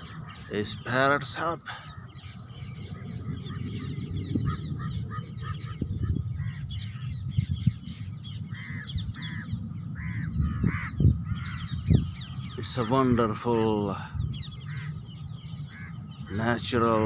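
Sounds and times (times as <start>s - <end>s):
steady low rumble: 0.0s - 17.0s
harsh parrot calls: 14.3s - 16.4s.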